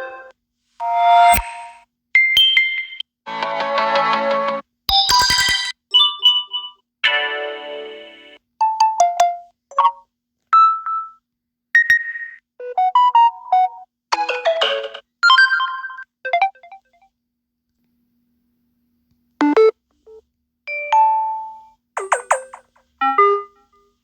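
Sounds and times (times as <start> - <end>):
phone alert chimes and jingles: 5.0 - 6.7.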